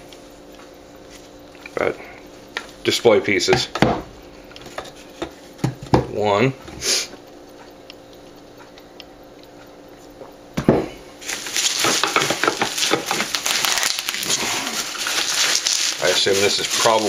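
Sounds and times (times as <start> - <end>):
plastic packaging crinkling: 11.2 - 17.0.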